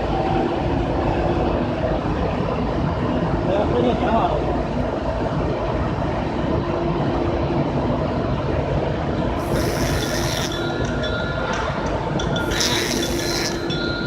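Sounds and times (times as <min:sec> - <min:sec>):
harsh high-pitched noise: 0:09.4 - 0:10.8, 0:12.4 - 0:13.9
machine rumbling: 0:09.4 - 0:14.0.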